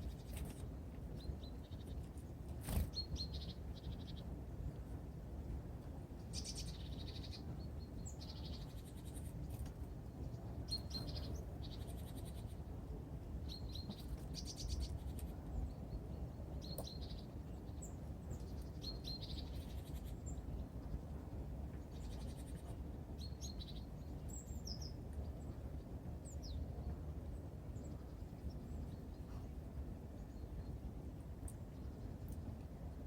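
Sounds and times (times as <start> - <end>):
small birds chirping: 0.0 - 4.8, 6.2 - 12.7, 13.4 - 21.0, 21.8 - 26.9
low background rumble: 0.0 - 33.0.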